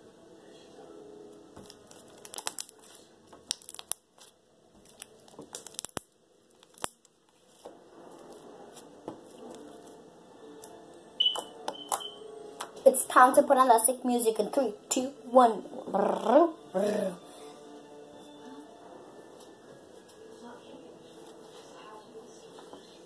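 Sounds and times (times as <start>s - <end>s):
slime squished by hand: 1.6s - 7.2s.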